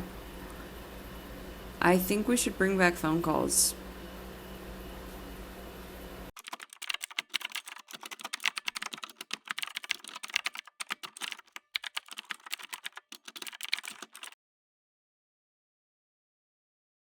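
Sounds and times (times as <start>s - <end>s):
rapid keyboard typing: 6.3s - 14.4s.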